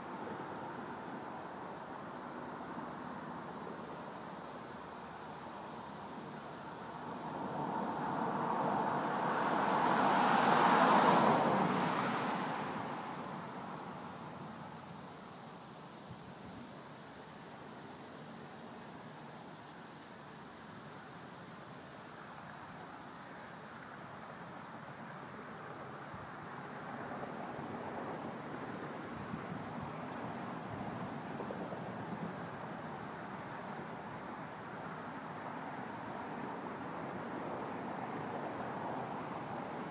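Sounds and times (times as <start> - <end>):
insects chirping: 0.0 - 39.9
vehicle passing: 7.0 - 14.0.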